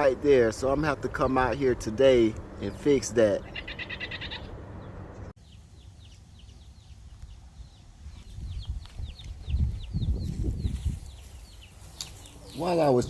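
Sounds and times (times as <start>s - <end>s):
young chickens peeping: 3.3s - 13.0s.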